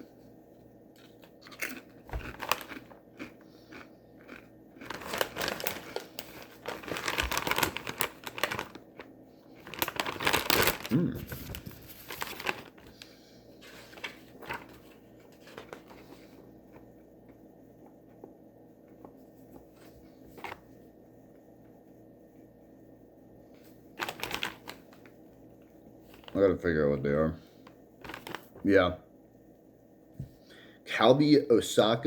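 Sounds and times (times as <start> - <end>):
plastic snack bag crinkling: 1.0 - 16.9, 23.9 - 25.2, 26.0 - 26.6, 27.6 - 28.7.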